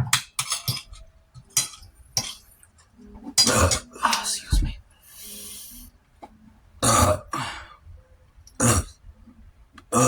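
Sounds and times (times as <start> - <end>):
man burping: 6.8 - 7.6, 8.6 - 9.0.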